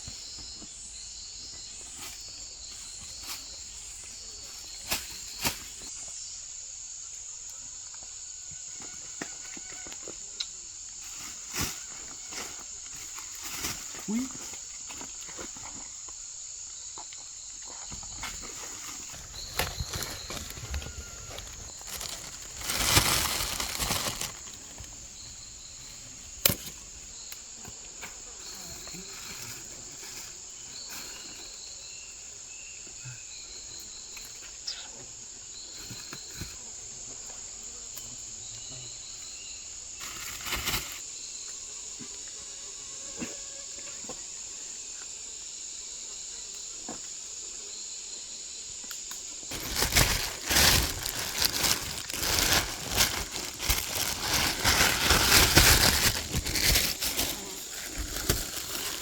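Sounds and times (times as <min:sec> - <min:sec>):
insect chirps: 0:00.0 - 0:59.0
insects droning: 0:00.0 - 0:59.0
loud rustling: 0:18.8 - 0:25.0, 0:49.5 - 0:59.0.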